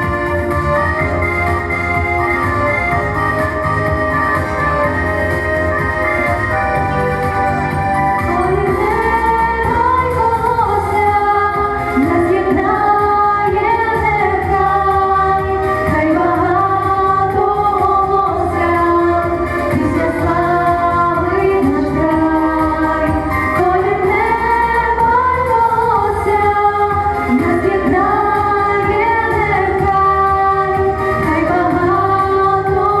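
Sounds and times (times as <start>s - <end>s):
instrumental backing music: 0.0s - 33.0s
women singing pop song: 8.2s - 33.0s.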